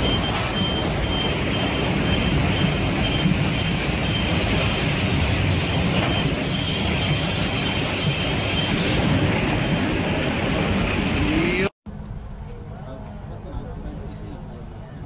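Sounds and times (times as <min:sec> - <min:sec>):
floodwater running in street: 0:00.0 - 0:11.7
low rumble of traffic: 0:11.2 - 0:15.0.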